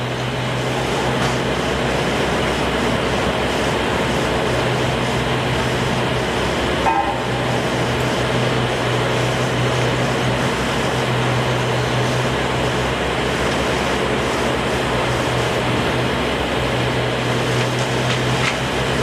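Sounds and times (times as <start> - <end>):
machine humming: 0.0 - 19.0.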